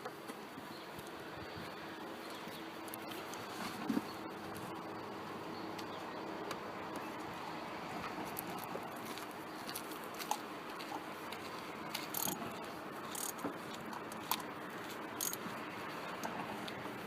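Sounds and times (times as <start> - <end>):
hand tools clicking and scraping: 8.0 - 16.8.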